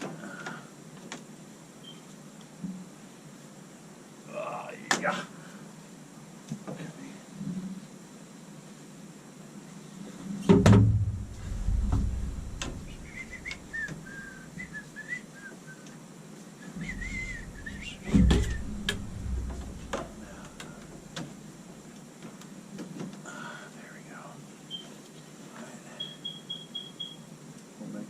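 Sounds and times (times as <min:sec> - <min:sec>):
clunking and knocking of pipes: 0:10.4 - 0:14.1, 0:16.8 - 0:21.4
person whistling a tune: 0:13.0 - 0:15.9, 0:16.7 - 0:18.6.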